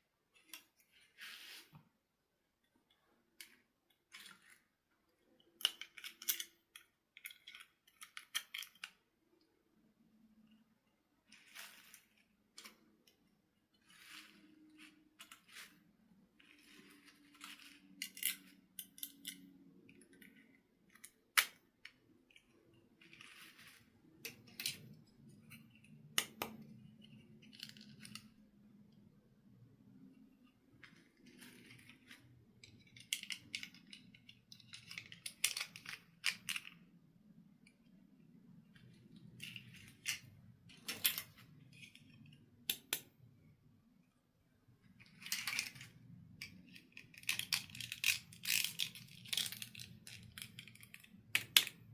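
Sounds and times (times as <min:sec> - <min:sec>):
plastic toys clicking: 0:05.2 - 0:09.1, 0:30.8 - 0:36.9, 0:38.8 - 0:43.1, 0:45.0 - 0:51.9.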